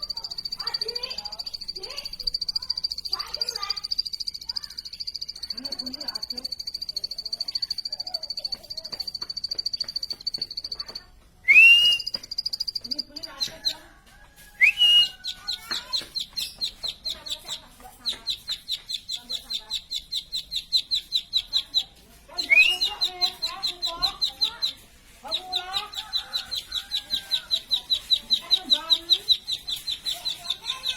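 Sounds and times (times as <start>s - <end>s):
bird singing trills: 0.0s - 13.8s, 14.6s - 30.9s
upward-swooping bird calls: 18.2s - 30.9s.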